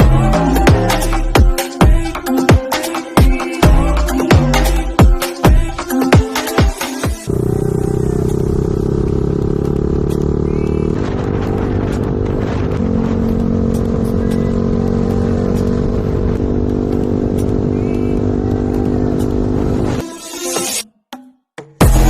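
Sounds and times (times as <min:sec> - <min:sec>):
motorcycle engine running: 0:07.2 - 0:20.0.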